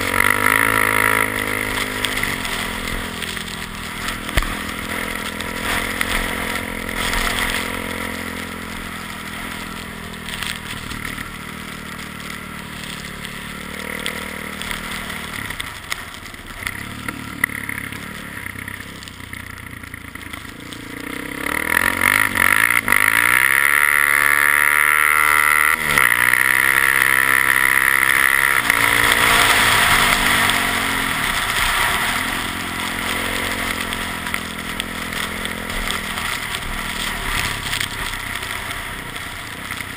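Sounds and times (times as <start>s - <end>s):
atv engine revving: 0.0s - 39.9s.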